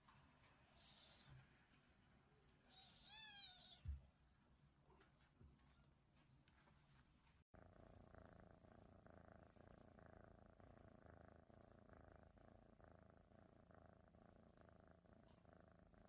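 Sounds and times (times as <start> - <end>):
cat purring: 7.5 - 16.0.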